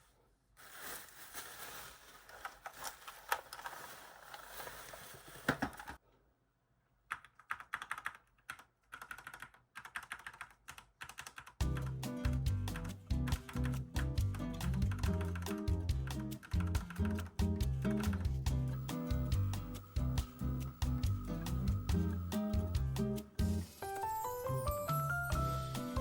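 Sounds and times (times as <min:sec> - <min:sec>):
mechanical keyboard typing: 0:07.1 - 0:18.5
background music with bass: 0:11.6 - 0:23.7, 0:25.2 - 0:26.0.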